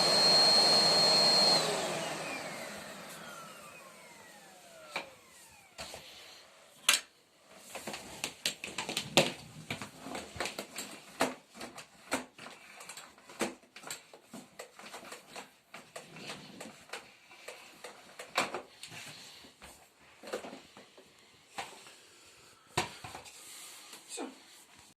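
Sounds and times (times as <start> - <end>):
plastic parts clicking and knocking: 7.8 - 18.7.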